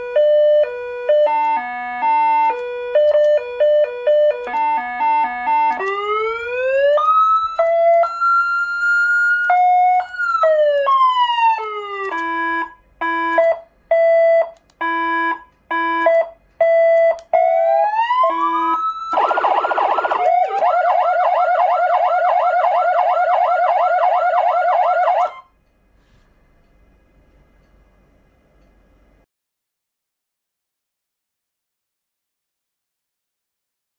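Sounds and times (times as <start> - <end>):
electronic siren wailing and yelping: 0.0 - 25.4.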